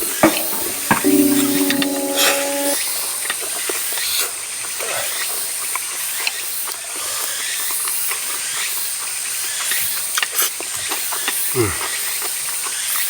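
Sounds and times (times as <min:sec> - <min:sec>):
constant high whine: 0:00.0 - 0:03.6.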